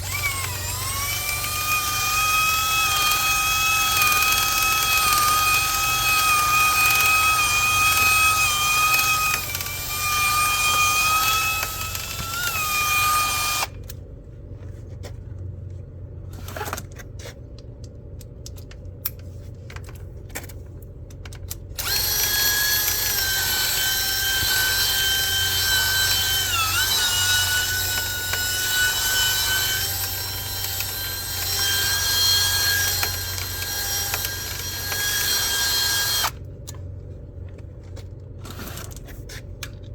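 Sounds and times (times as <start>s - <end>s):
power tool motor whine: 0.0s - 13.7s, 21.8s - 36.4s.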